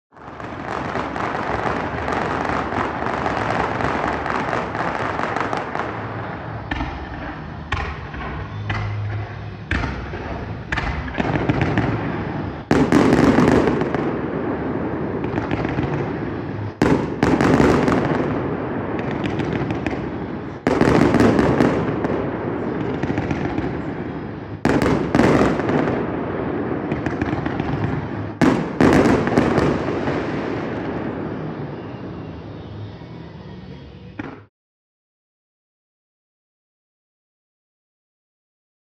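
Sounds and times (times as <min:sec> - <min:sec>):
fireworks shells bursting: 0:00.3 - 0:24.0, 0:24.7 - 0:31.8
loud bangs with echoing rumble: 0:00.3 - 0:31.7.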